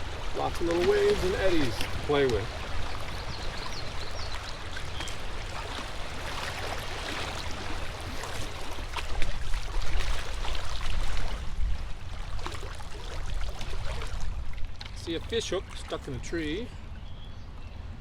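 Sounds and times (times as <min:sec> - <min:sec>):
river water rushing and splashing: 0:00.0 - 0:16.6.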